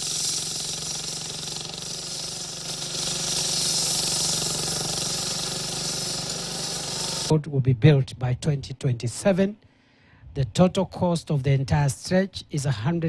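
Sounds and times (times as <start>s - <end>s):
loud hiss: 0.0s - 7.3s.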